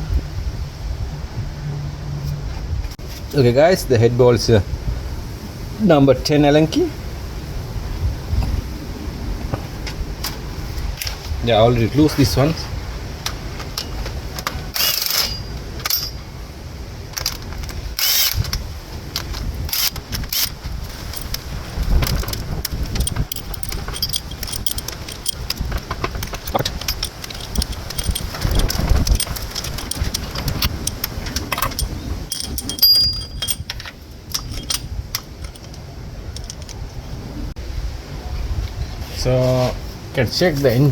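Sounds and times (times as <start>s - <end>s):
low background rumble: 7.0s - 38.8s
hand tools clinking on metal: 13.6s - 16.2s, 19.2s - 36.8s.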